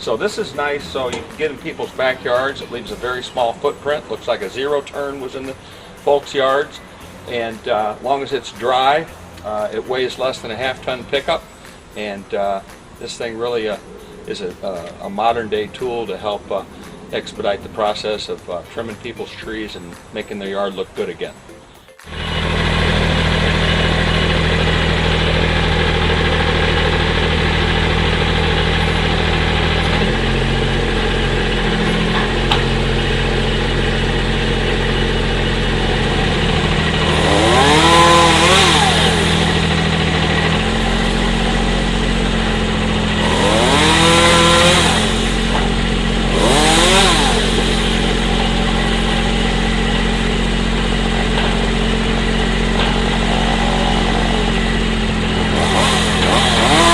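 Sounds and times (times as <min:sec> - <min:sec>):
rising and falling whines: 0:21.5 - 0:56.9
machine engine running: 0:22.1 - 0:56.9.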